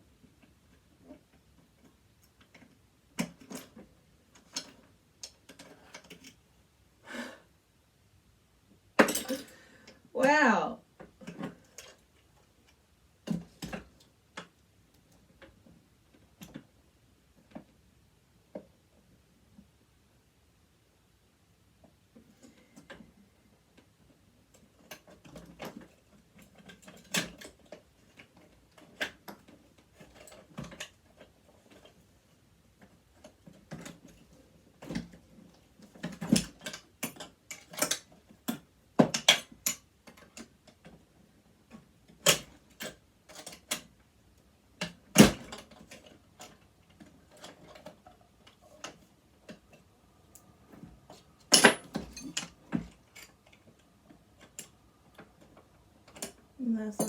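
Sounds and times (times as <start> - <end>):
tools and metal parts clicking: 51.5 - 53.6.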